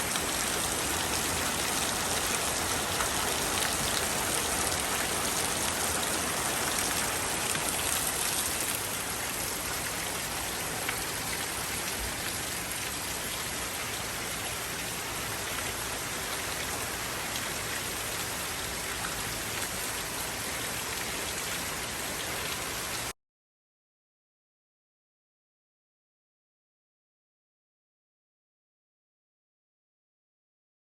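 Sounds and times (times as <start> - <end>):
rain pattering: 0.0 - 23.1.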